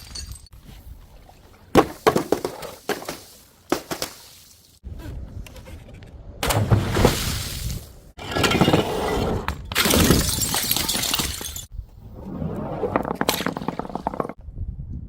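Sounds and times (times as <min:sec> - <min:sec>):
glass bottles shattering: 0:00.0 - 0:00.6, 0:09.6 - 0:11.7.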